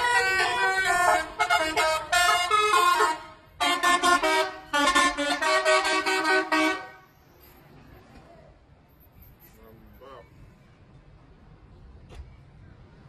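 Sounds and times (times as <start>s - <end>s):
multi-tone bus air horn melody: 0.0s - 7.1s.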